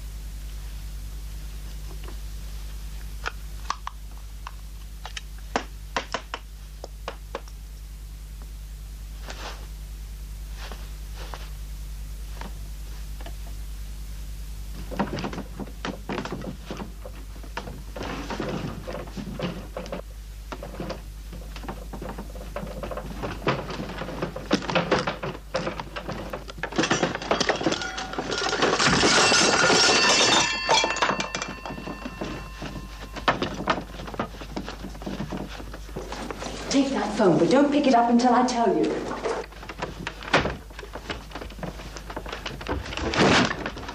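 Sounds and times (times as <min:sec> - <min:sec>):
low hum: 0:09.8 - 0:37.6
something breaking: 0:23.4 - 0:33.8.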